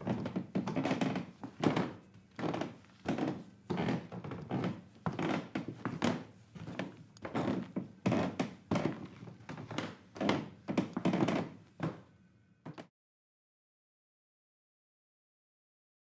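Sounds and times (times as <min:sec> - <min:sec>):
wooden stairs creaking: 0:00.0 - 0:12.0.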